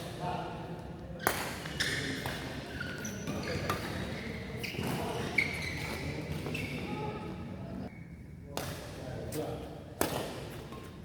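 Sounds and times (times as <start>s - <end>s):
shoes squeaking on court floor: 1.2s - 7.4s
racket hitting shuttlecock: 10.0s - 10.9s.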